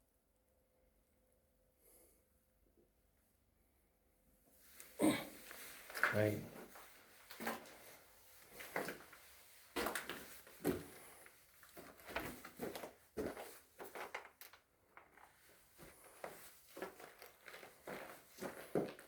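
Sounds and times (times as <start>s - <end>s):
footsteps crunching over debris: 6.6s - 14.4s, 15.8s - 19.0s.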